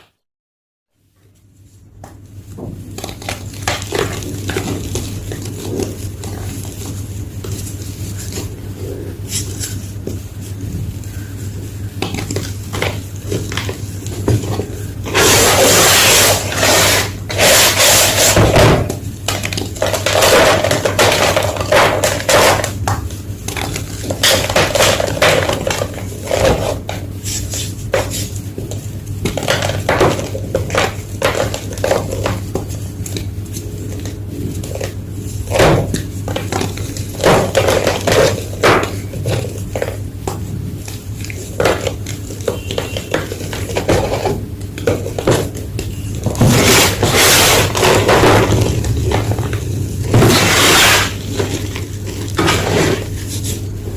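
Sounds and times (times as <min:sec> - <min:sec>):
low steady hum: 0:01.0 - 0:53.9
chalk crunching and crackling: 0:01.4 - 0:18.4, 0:49.6 - 0:53.8.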